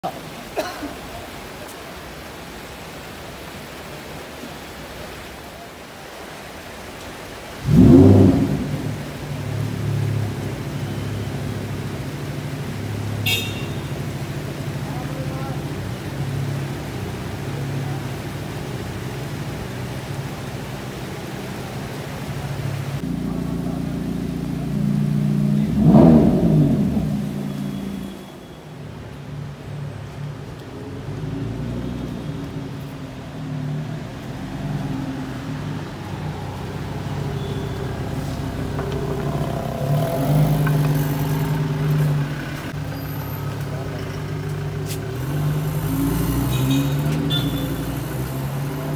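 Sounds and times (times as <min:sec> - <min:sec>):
sports car engine idling and revving: 0:07.6 - 0:14.9, 0:23.0 - 0:28.1, 0:36.6 - 0:48.9.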